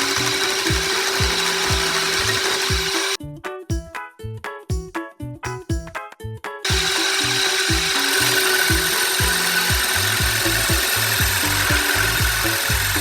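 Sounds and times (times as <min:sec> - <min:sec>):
drill driver running: 0:00.0 - 0:03.2, 0:06.7 - 0:13.0
tool rubbing against wood: 0:00.0 - 0:03.2, 0:06.7 - 0:13.0
background music with a beat: 0:00.0 - 0:13.0.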